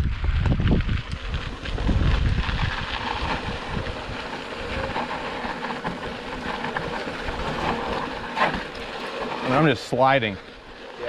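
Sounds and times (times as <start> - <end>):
wind buffeting microphone: 0.0 - 8.3
tyres crunching over gravel: 0.4 - 11.0.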